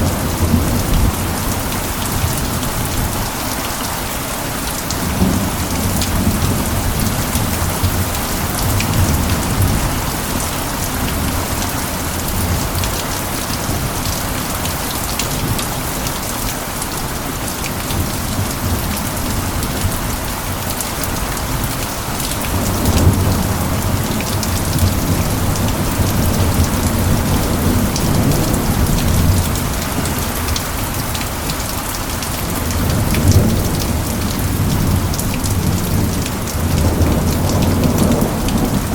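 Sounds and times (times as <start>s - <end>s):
heavy rain: 0.0s - 38.9s
low rolling thunder: 32.6s - 38.9s.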